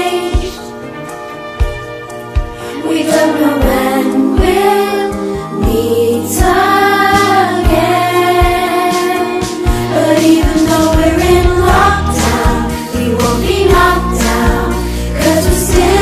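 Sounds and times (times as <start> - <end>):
voices singing a melody: 2.7 - 16.0
backing track with drum beat: 7.7 - 14.7.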